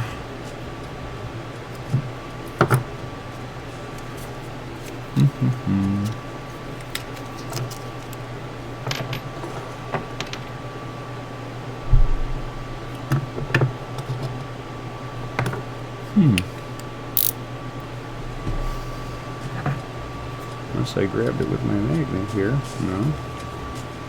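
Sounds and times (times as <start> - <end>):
steady hum: 0.0 - 8.8, 10.6 - 14.0, 14.6 - 24.0
small parts clicking on workbench: 16.4 - 17.4.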